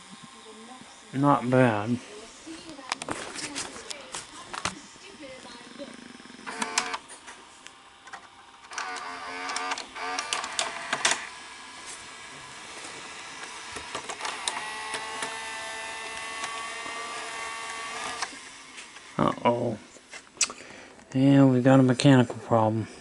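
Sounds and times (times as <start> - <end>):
motor whine: 0.0 - 20.3
mechanism clicks: 6.4 - 7.0, 8.0 - 11.3, 13.4 - 18.4.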